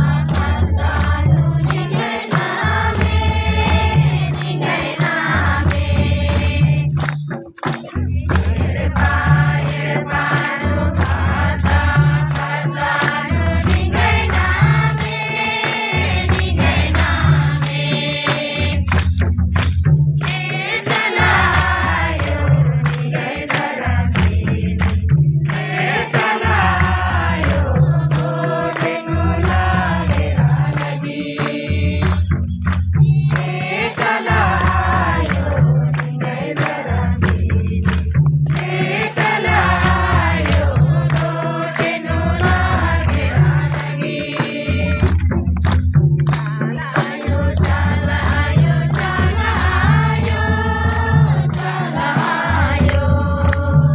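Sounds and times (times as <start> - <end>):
deep drum pattern: 0.0 - 53.9
shaker jingling: 0.0 - 53.9
voices singing devotional song: 0.0 - 53.9.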